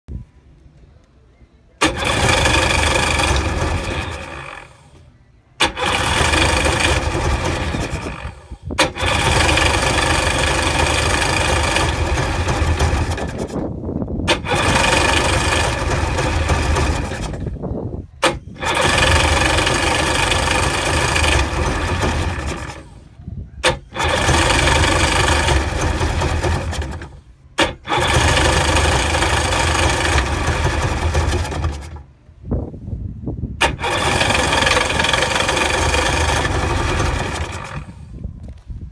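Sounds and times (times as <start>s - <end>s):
electric starter cranking engine: 1.8s - 32.2s, 33.6s - 38.3s.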